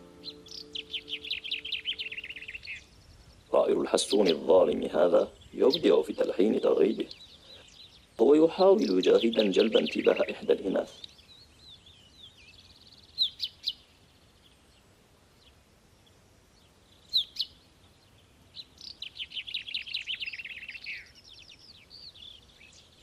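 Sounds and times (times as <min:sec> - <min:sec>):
chaffinch song: 0:00.0 - 0:23.0
soft bird chirps: 0:00.0 - 0:23.0
short sharp bird calls: 0:18.6 - 0:22.7.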